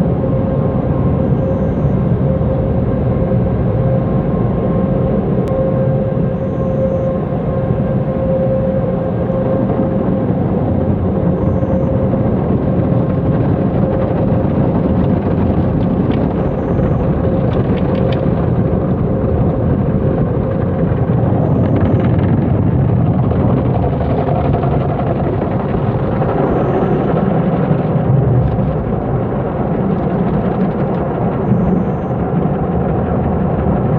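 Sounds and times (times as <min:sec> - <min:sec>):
faint steady hum: 0:00.0 - 0:33.9
car wash machinery rumbling: 0:11.9 - 0:33.9.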